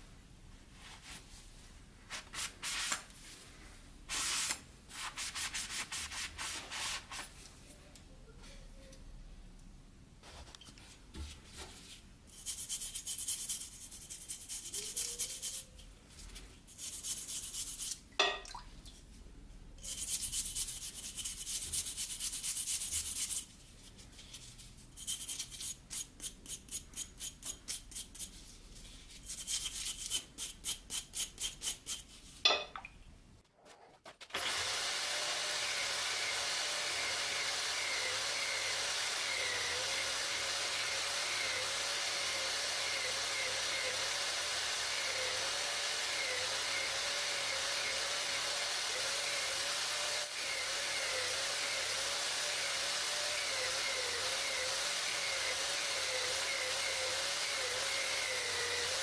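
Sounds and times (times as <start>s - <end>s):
electric motor running: 34.4s - 59.0s.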